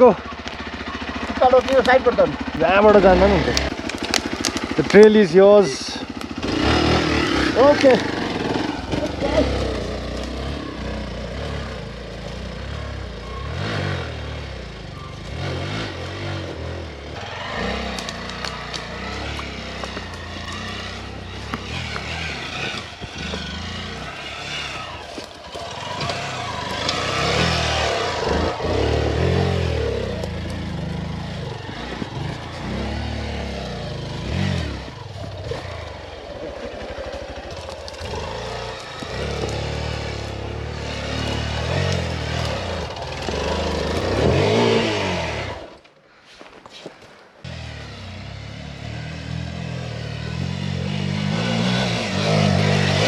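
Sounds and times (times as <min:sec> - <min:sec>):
dirt bike engine revving: 0:00.0 - 0:45.8, 0:47.4 - 0:53.0.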